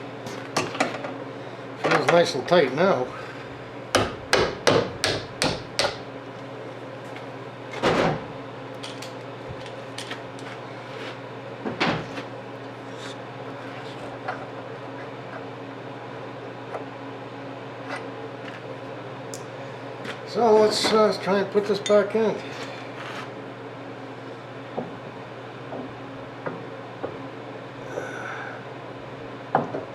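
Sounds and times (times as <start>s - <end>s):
hammer tapping on metal: 4.0s - 6.0s.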